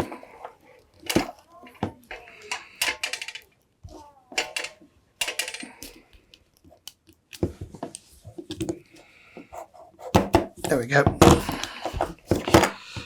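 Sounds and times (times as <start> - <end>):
small metal parts clinking: 2.1 - 3.6, 4.4 - 6.1.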